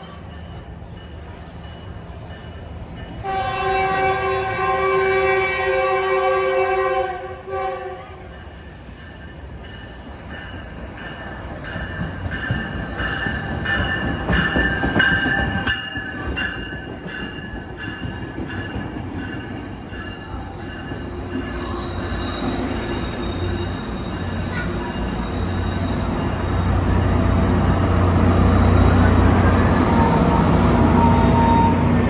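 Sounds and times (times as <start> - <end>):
diesel locomotive engine drone: 0.0 - 32.0
train wheels squealing on rails: 8.0 - 32.0.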